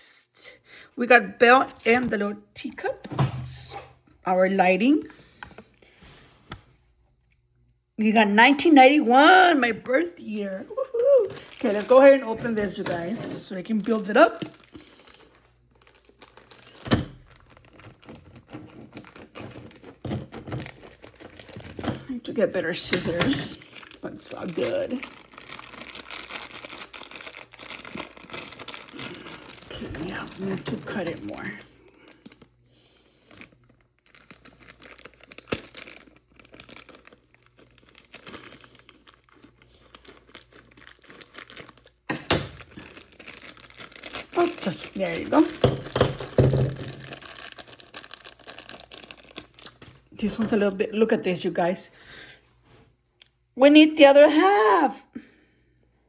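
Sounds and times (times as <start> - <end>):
plastic packaging crinkling: 9.2 - 51.1
scissors cutting packaging: 15.9 - 22.1.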